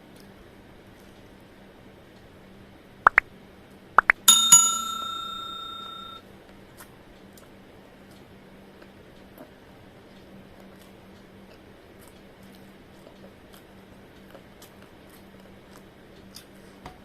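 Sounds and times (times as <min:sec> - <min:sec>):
bell-like metallic ring: 0:04.3 - 0:06.2.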